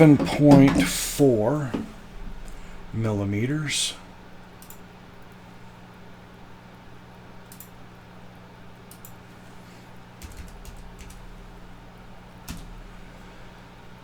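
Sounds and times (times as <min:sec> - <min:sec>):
steady low hum: 0:00.0 - 0:14.0
computer keyboard typing: 0:07.5 - 0:07.7, 0:10.1 - 0:13.5.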